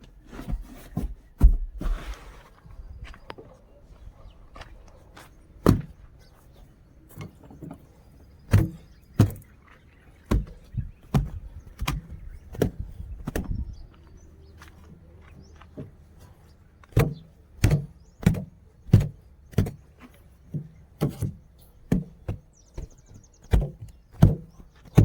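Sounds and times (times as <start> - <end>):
car body knocks and clunks: 0.4 - 2.0, 5.6 - 6.0, 8.4 - 9.5, 10.3 - 13.7, 16.8 - 19.9, 20.5 - 25.0.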